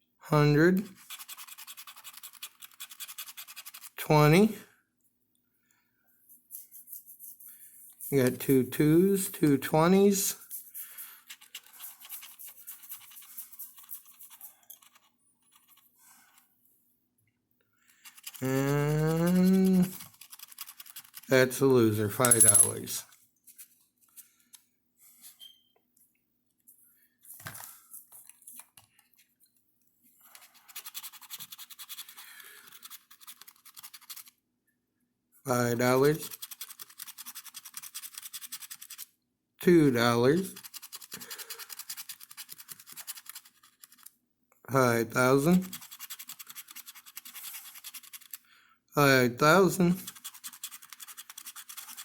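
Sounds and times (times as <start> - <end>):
scratching lottery ticket: 0.8 - 4.4, 6.3 - 16.5, 17.8 - 22.5, 30.2 - 34.4, 35.7 - 39.1, 39.9 - 44.2, 45.1 - 48.4, 49.5 - 52.0.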